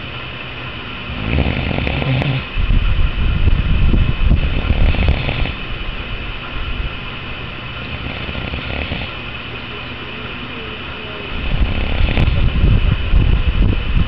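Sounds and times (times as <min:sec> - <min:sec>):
loud low snoring: 0:01.1 - 0:02.7, 0:04.2 - 0:05.8, 0:07.7 - 0:09.3, 0:11.3 - 0:13.1.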